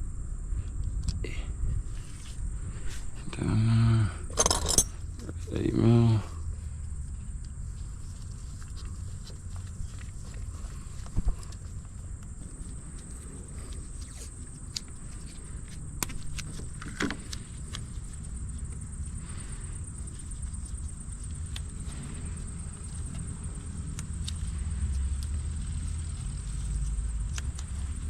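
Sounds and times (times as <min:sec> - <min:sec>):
steady low rumble: 0:00.0 - 0:28.0
hand tools clicking and knocking: 0:04.3 - 0:04.9.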